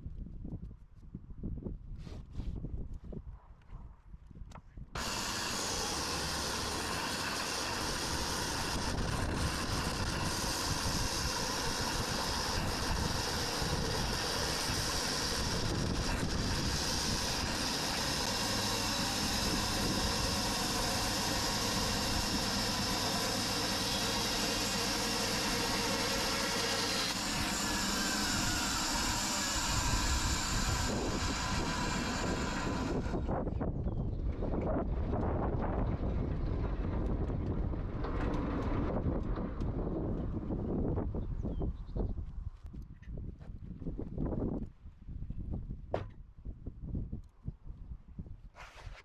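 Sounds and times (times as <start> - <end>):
sawmill engine and machinery: 4.9 - 42.8.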